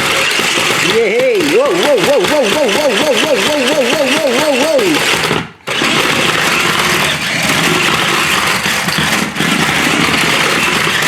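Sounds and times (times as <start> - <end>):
toy car motor whirring: 0.0 - 11.0
wheels running over floor: 0.0 - 11.0.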